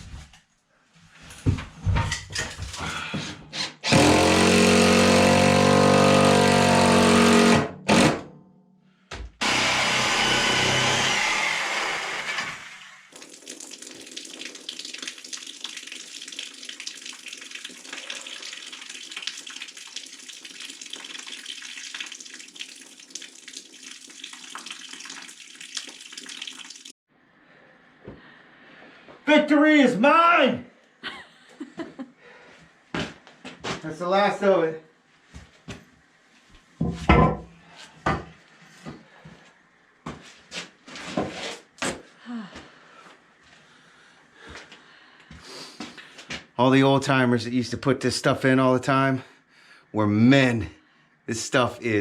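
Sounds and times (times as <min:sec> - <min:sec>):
reciprocating saw cutting pipe: 0:03.5 - 0:08.1, 0:09.4 - 0:13.0.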